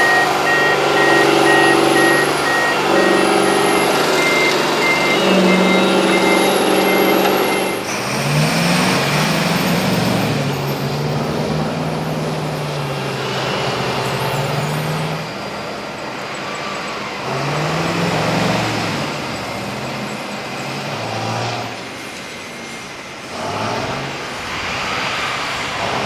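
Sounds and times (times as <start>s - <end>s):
dump truck engine revving: 0.0s - 22.2s, 23.2s - 26.0s.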